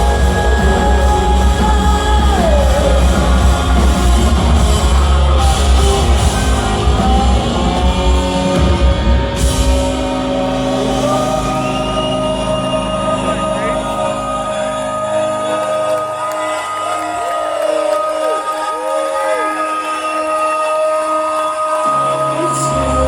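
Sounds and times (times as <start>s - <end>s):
live rock band playing: 0.0s - 18.0s
person singing: 0.0s - 23.0s.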